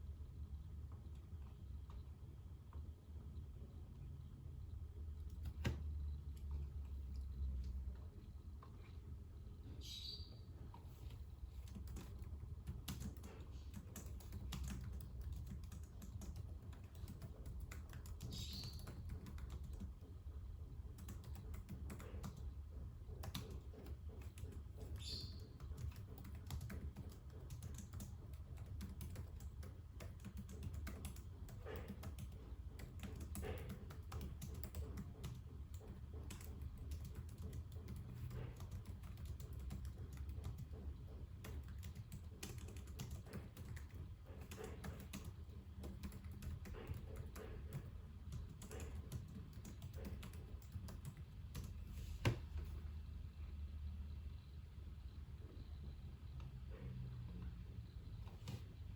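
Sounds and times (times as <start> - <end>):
low steady hum: 0.0 - 58.9
keyboard typing: 5.2 - 8.0, 10.8 - 52.8.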